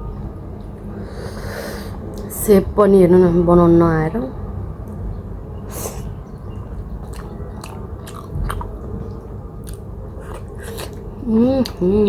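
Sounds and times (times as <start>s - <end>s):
chewing with wet mouth smacks: 6.5s - 11.8s.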